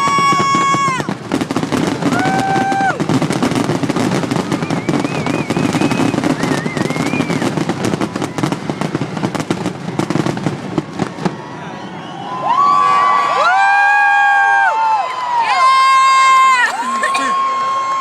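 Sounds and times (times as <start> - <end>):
fireworks bangs and crackles: 0.0 - 11.6.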